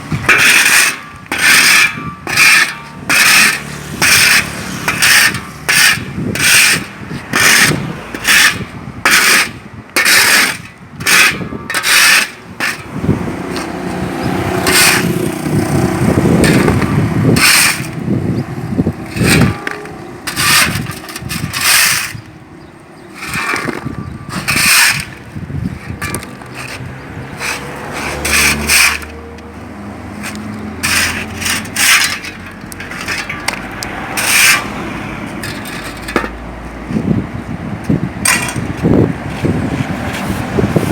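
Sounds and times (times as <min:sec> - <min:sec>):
shovel scraping rubble: 0:00.0 - 0:18.2, 0:18.8 - 0:22.3, 0:23.0 - 0:37.2, 0:37.9 - 0:40.9
rubble shifting rumble: 0:12.4 - 0:40.9.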